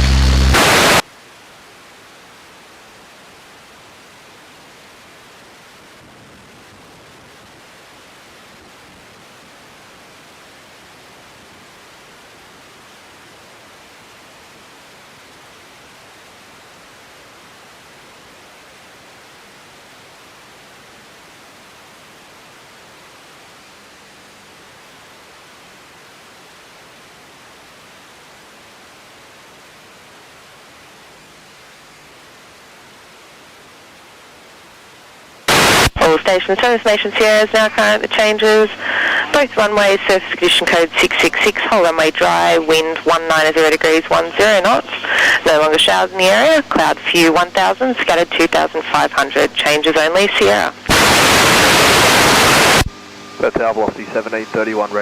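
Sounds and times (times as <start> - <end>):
radio squelch burst: 0.0 - 1.0, 35.5 - 55.0
steady radio hiss: 0.0 - 55.0.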